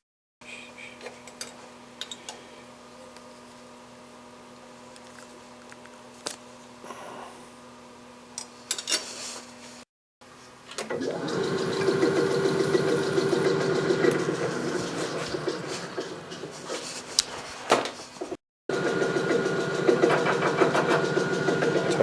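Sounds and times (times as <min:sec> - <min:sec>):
metal lathe whirring: 0:10.9 - 0:16.6, 0:18.7 - 0:22.0.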